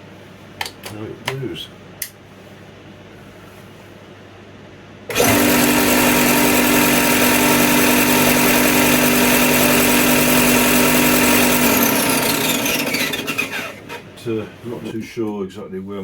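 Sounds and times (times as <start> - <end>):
bench sander motor humming: 5.1 - 14.2.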